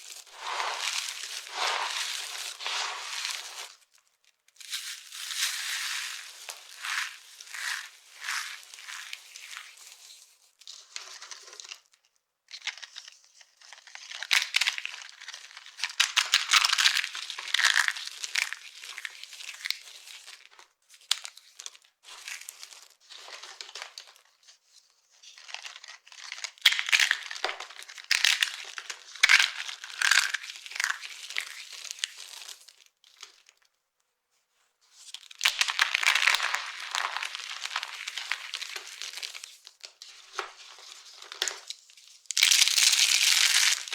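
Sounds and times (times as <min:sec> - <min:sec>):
dry soap crunching by hand: 0:00.0 - 0:03.8, 0:04.7 - 0:09.7, 0:25.5 - 0:32.6, 0:35.4 - 0:39.5, 0:42.3 - 0:43.9.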